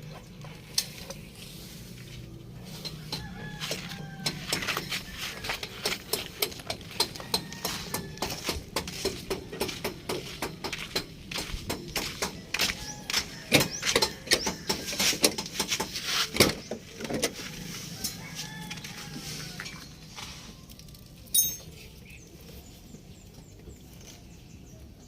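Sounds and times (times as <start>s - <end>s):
hand tools clinking on metal: 21.2s - 21.8s
high metallic ring: 21.3s - 21.7s.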